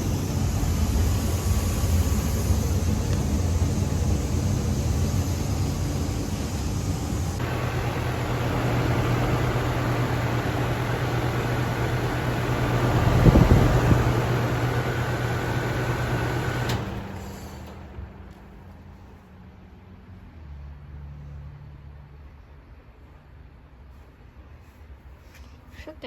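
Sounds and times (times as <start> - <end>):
compressor humming: 0.0 - 18.7
condenser fan whooshing: 0.0 - 19.2.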